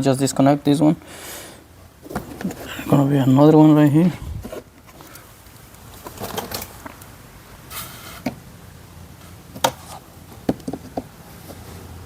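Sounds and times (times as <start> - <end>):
handling noise: 2.0 - 7.1.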